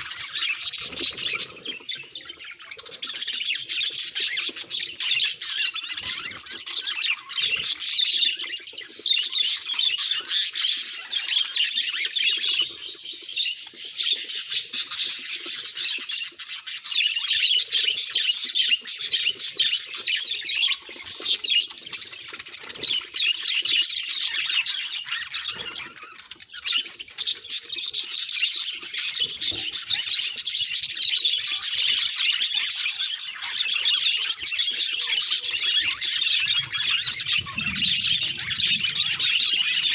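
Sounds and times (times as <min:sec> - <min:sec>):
budgerigar chatter: 0:31.6 - 0:39.9.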